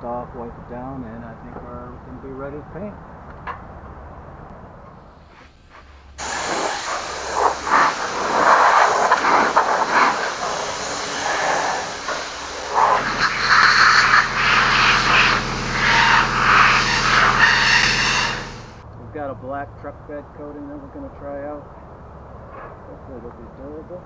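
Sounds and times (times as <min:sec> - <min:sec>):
compressed air hissing: 0:05.0 - 0:18.8
air compressor motor humming: 0:05.2 - 0:18.8.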